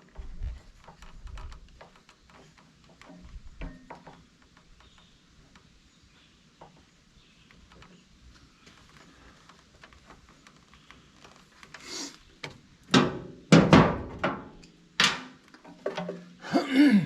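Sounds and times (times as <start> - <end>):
tools and parts clicking and tapping: 0.7 - 5.0.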